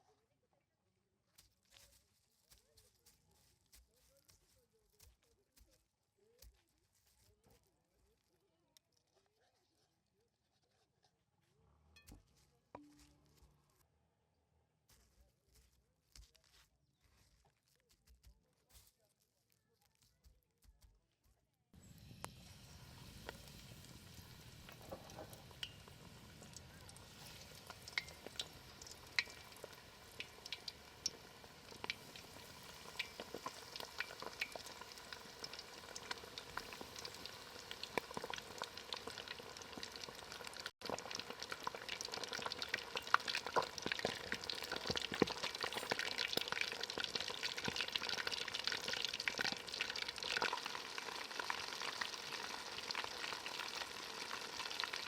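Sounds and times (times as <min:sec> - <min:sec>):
chicken sizzling in hot oil: 0:21.8 - 0:55.0.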